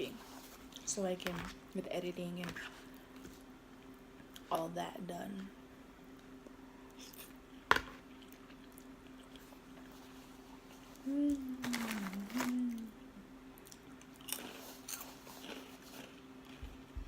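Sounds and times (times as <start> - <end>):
person humming: 11.0 - 13.2
person eating noodles: 13.6 - 16.2.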